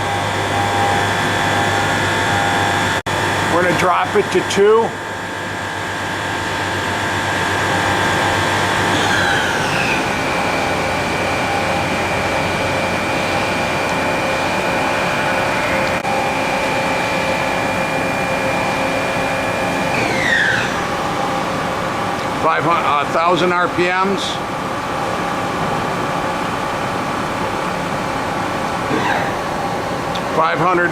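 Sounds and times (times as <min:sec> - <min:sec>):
boring mill gear whine: 0:00.0 - 0:30.9.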